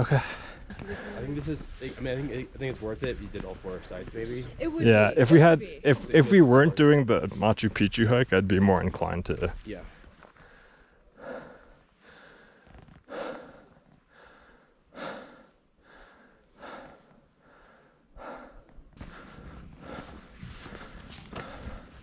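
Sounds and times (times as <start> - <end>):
person breathing hard: 10.4 - 22.0
rustling noise: 18.9 - 22.0.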